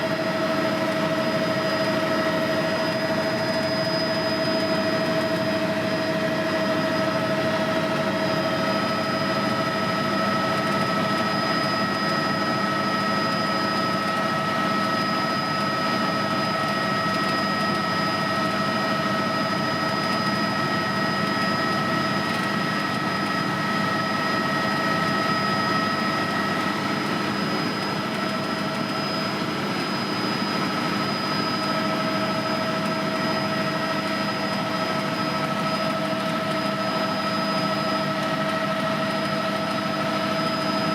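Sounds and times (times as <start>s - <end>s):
helicopter engine and rotor: 0.0s - 40.9s.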